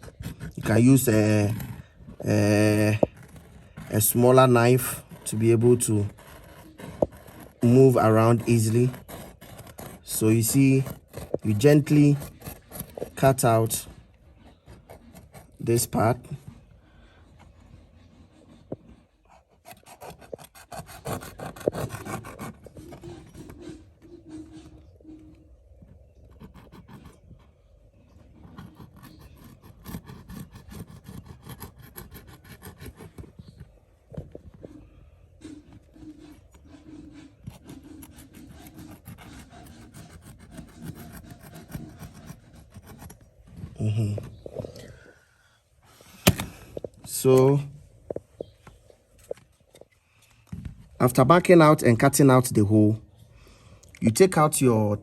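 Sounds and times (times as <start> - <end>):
knife sawing through tarpaulin: 0.0 - 16.2, 19.4 - 23.8, 28.4 - 33.4, 36.8 - 43.1.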